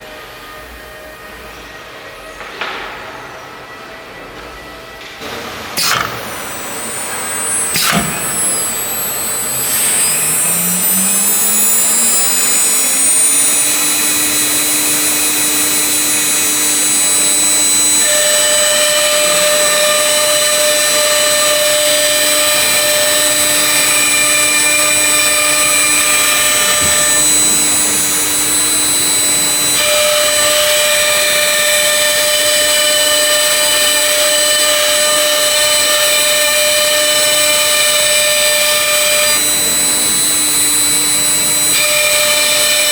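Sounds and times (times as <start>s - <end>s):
machine tones: 5.8s - 35.4s
machine noise: 5.8s - 42.9s
router spindle whine: 5.8s - 42.9s.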